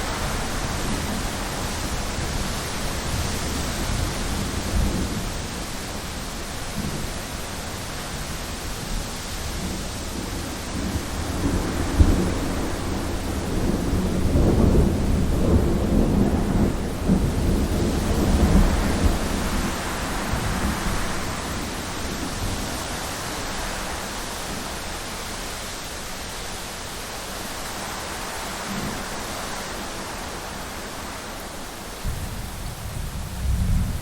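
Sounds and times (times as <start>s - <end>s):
deep rumble of thunder: 0.0s - 6.0s, 9.5s - 22.9s, 32.0s - 34.0s
heavy rain: 0.0s - 34.0s.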